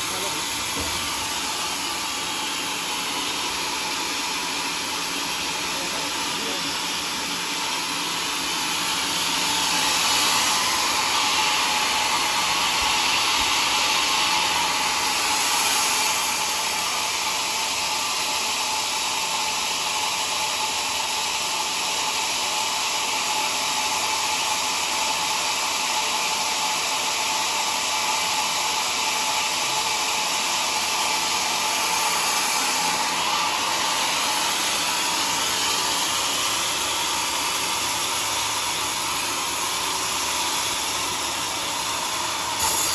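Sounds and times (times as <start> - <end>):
sawmill saw whirring: 0.0 - 42.9.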